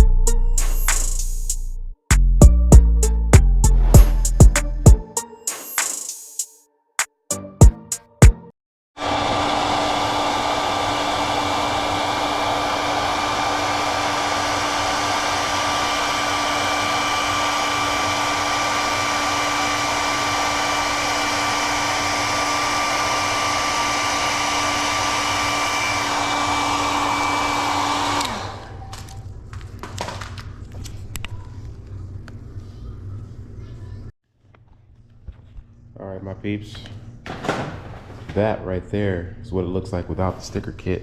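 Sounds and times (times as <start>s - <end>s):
hot-air blower whirring: 9.0s - 29.3s.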